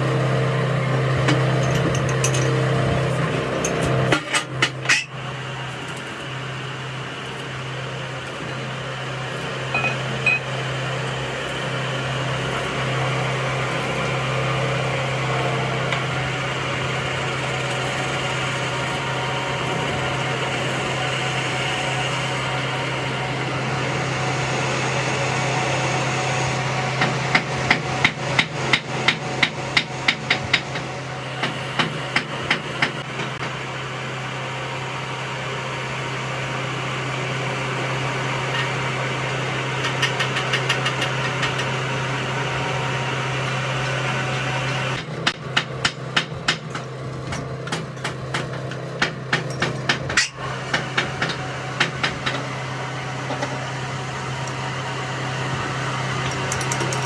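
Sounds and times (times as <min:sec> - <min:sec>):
steady mechanical hum: 0:00.0 - 0:57.0
hammer striking metal: 0:09.7 - 0:10.4.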